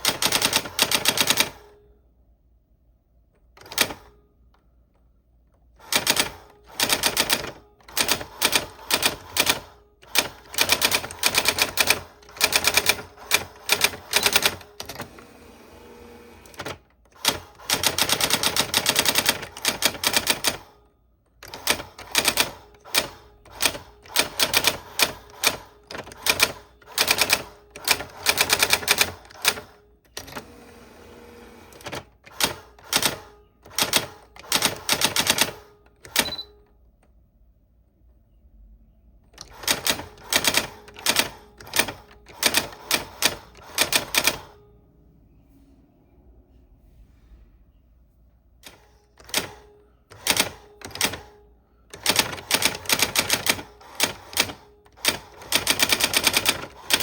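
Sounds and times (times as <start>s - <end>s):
typewriter keys striking: 0.0s - 1.5s, 5.8s - 15.1s, 16.5s - 20.6s, 21.4s - 30.4s, 31.8s - 36.4s, 39.4s - 44.5s, 48.7s - 51.3s, 51.9s - 57.0s.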